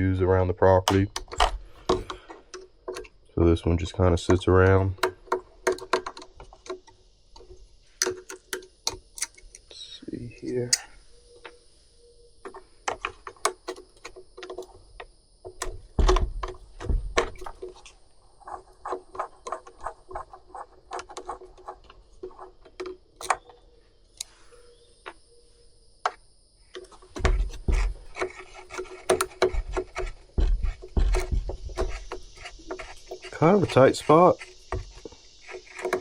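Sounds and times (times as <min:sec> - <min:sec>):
tools clicking on plastic housing: 0:00.8 - 0:03.2, 0:04.2 - 0:09.6
heavier knocks: 0:15.8 - 0:17.4, 0:29.1 - 0:32.6.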